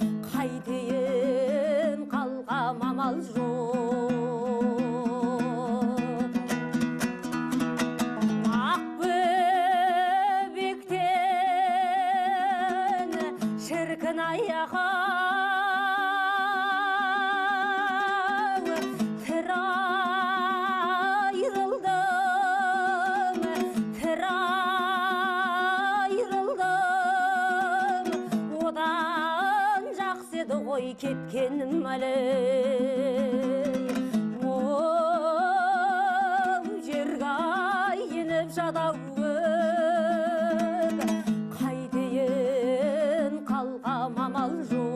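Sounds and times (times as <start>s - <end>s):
woman singing in a high voice: 0.0s - 6.5s, 8.1s - 44.9s
plucked strings: 0.0s - 44.9s.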